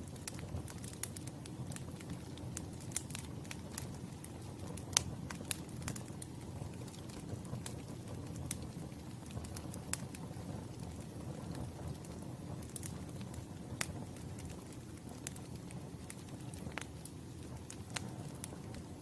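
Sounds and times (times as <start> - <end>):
low rumble of flames: 0.0 - 19.0
wood crackling and popping: 0.0 - 19.0.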